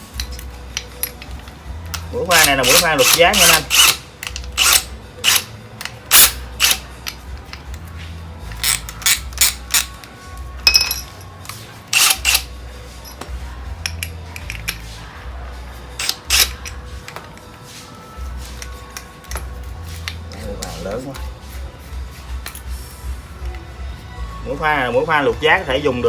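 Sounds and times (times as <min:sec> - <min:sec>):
small tools clicking and clinking: 0:00.0 - 0:14.9, 0:16.0 - 0:17.5, 0:18.4 - 0:21.2
quiet background music: 0:00.0 - 0:26.0.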